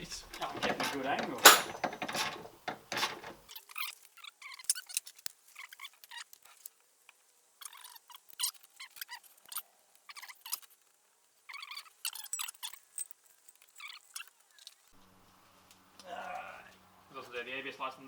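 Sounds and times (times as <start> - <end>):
hand tools scraping and clicking: 0.2 - 6.8, 11.5 - 15.0.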